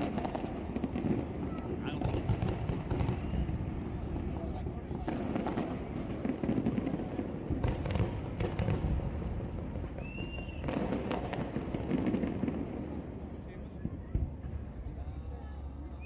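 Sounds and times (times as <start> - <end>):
fireworks bangs and crackles: 0.0 - 15.8
high firework whistle: 3.0 - 3.6, 9.9 - 11.1.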